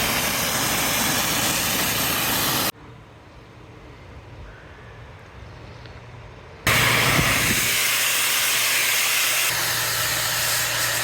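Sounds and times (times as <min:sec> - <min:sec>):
pressure washer jet hissing: 0:00.0 - 0:02.7, 0:06.7 - 0:11.0
pump low hum: 0:00.0 - 0:02.7, 0:06.7 - 0:11.0.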